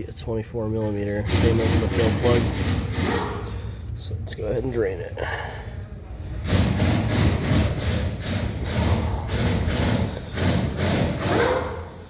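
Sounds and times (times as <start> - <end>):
hand ratchet rasping: 1.2 - 3.4, 6.4 - 11.7.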